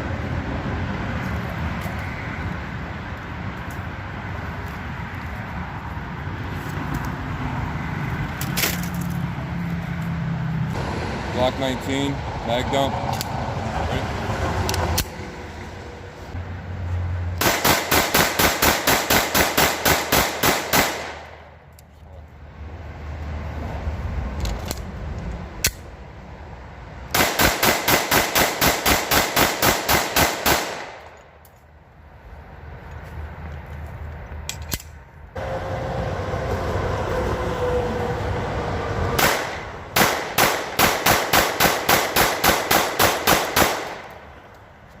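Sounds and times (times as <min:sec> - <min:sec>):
pistol rapid fire: 0:17.4 - 0:21.3, 0:27.1 - 0:31.0, 0:39.2 - 0:44.1.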